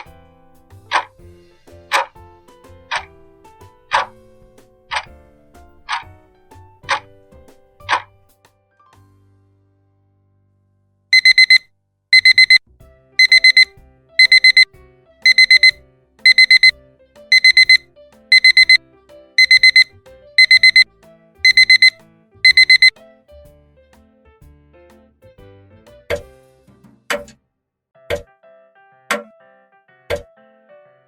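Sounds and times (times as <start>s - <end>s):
alarm clock beeping: 11.2s - 11.6s, 12.2s - 12.6s, 13.2s - 14.7s, 15.3s - 16.7s, 17.3s - 18.8s, 19.4s - 22.9s.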